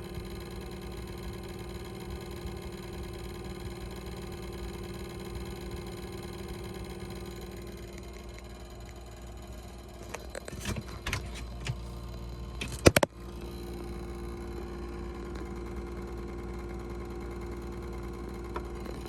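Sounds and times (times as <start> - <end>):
refrigerator humming: 0.0 - 19.0.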